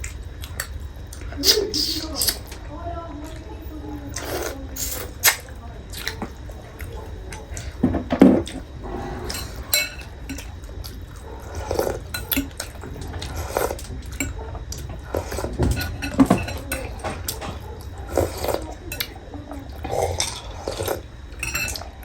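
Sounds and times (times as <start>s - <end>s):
wet eating sounds: 0.0s - 7.8s, 8.4s - 22.0s
utensils clinking on plates: 4.8s - 22.0s.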